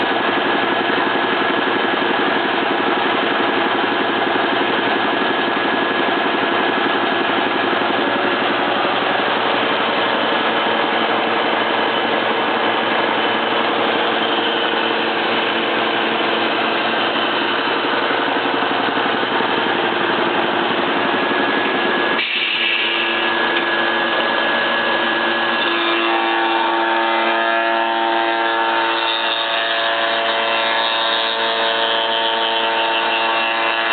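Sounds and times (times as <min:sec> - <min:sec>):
shaper machine running: 0:00.0 - 0:33.9.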